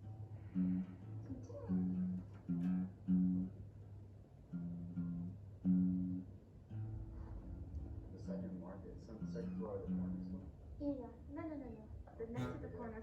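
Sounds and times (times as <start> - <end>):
slow plucked guitar melody: 0.0 - 3.8, 4.4 - 8.6.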